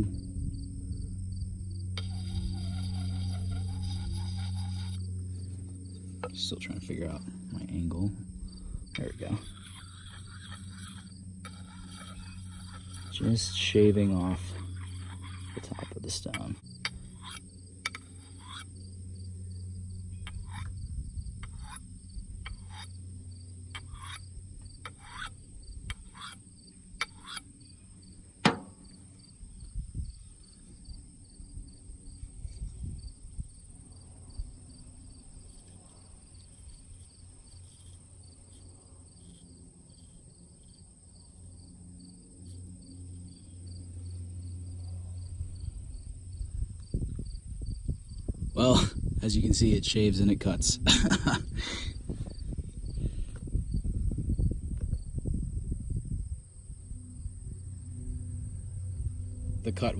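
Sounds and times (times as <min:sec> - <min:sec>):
whetstone scraping axe edge: 0:09.0 - 0:18.7
sharp click: 0:28.4 - 0:28.8.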